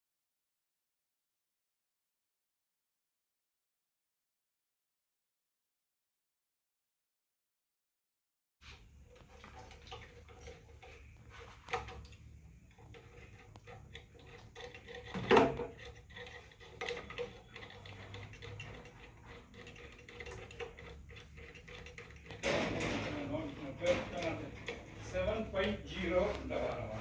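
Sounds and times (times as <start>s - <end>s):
metal tools clicking and clinking: 11.7s - 27.0s.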